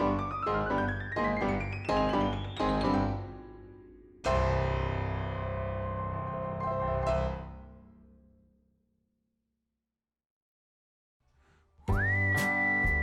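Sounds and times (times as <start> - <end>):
piano chord ringing: 0.0 - 7.9.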